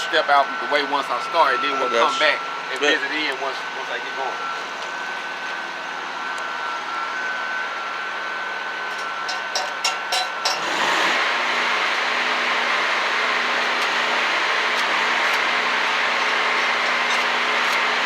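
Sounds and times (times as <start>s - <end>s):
welding machine hum: 8.7s - 18.0s
welding rod striking arc: 9.3s - 10.7s
welding arc crackling: 10.5s - 18.0s.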